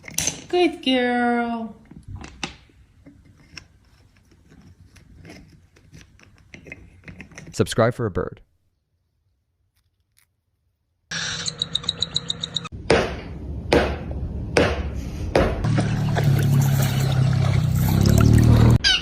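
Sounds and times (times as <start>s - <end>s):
low bass tone: 15.6s - 18.8s.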